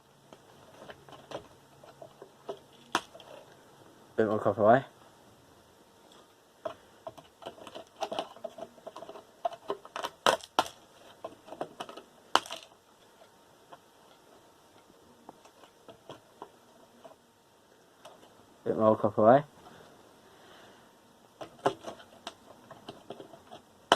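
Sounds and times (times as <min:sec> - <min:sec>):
small parts clicking and tapping: 0:00.3 - 0:03.6, 0:06.1 - 0:17.2, 0:21.4 - 0:23.9.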